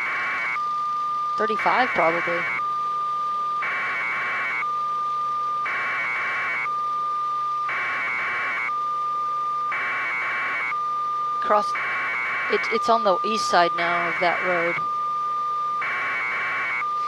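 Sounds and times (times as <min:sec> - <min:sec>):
electronic alert warble and beep: 0:11.4 - 0:14.9.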